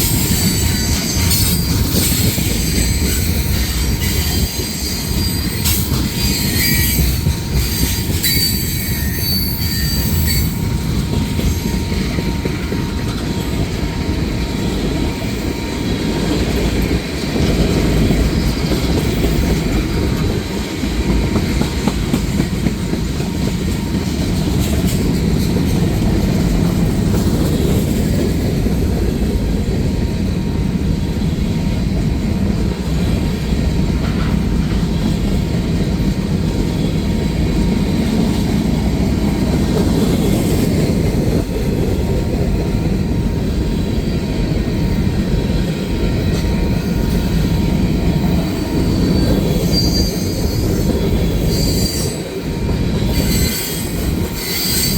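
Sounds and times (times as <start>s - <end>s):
high wheel squeal: 0.0s - 12.4s, 46.8s - 54.9s
freight train wheels rumbling on track: 0.0s - 54.9s.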